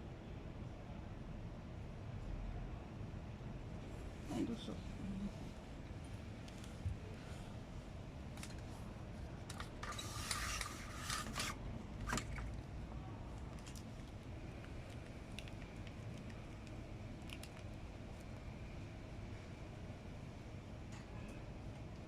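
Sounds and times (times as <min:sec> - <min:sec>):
cat eating with crunching clicks: 0:12.1 - 0:18.8.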